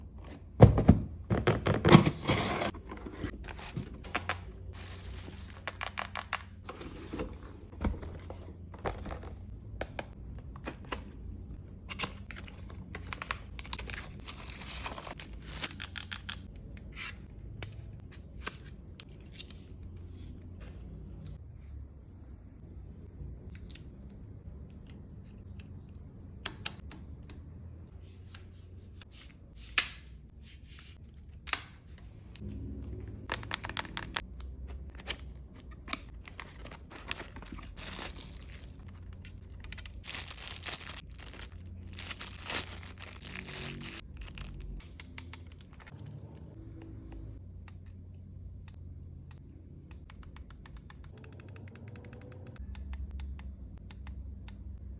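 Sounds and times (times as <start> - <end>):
packaging clicks and taps: 33.3 - 42.2, 49.3 - 54.7
packaging crinkling and rustling: 34.9 - 46.0.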